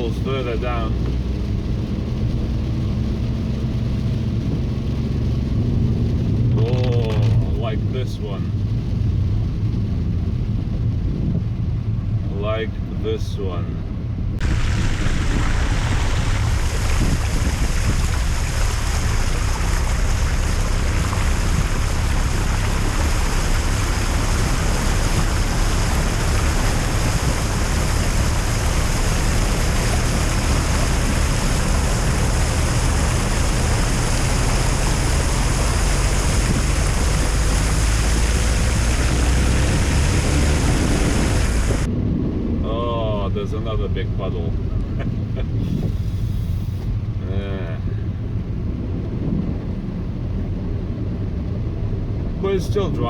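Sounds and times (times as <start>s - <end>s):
low rumble: 0.0s - 53.0s
water spraying against car underside: 14.4s - 41.9s.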